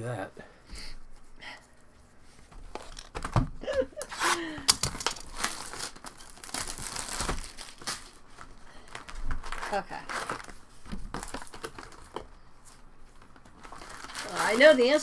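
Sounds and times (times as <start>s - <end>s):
foil wrappers tearing and crinkling: 4.0s - 12.2s, 13.3s - 15.0s.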